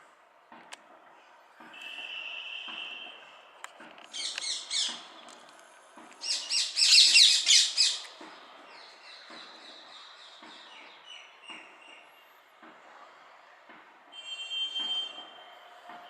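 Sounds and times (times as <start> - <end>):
small birds chirping: 6.2 - 8.1.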